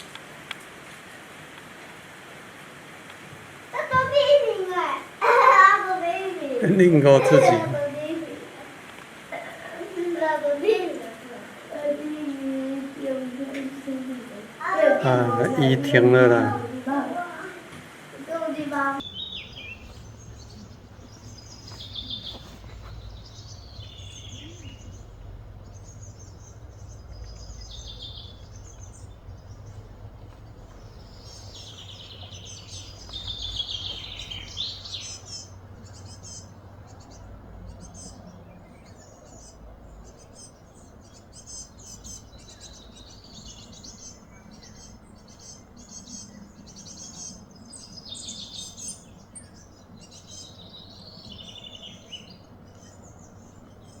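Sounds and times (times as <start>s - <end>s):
birds chirping and calling: 3.8s - 17.5s, 18.2s - 54.0s
low background rumble: 18.5s - 54.0s.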